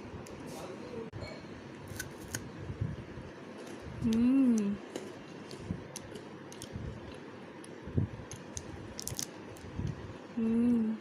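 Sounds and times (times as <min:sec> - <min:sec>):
person humming mmm: 0:04.0 - 0:04.8, 0:10.4 - 0:11.0
chewing crisp wafer crunches: 0:08.3 - 0:09.7.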